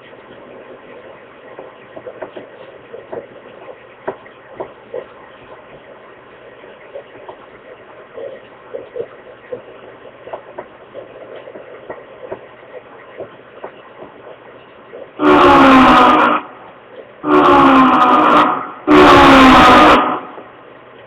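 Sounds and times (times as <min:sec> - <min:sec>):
loud multi-pitched tone: 0:15.1 - 0:20.5.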